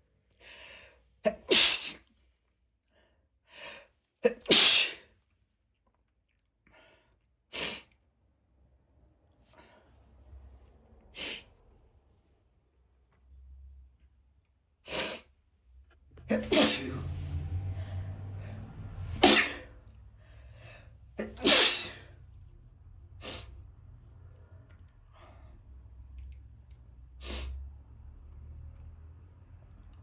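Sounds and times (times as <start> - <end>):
man sneezing: 1.3 - 2.0, 4.2 - 5.0, 16.3 - 17.4, 19.1 - 19.7, 21.2 - 22.1.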